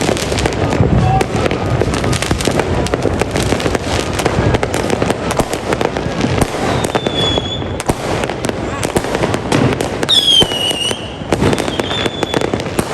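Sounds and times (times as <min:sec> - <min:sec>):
fireworks bangs and crackles: 0:00.0 - 0:12.9
firework whistle: 0:06.4 - 0:07.8, 0:10.0 - 0:12.9.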